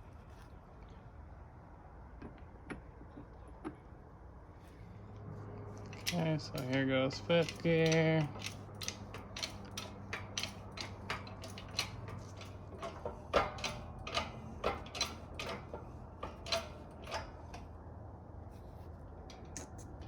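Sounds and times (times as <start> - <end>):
shop press metallic clicks and knocks: 5.9 - 17.7.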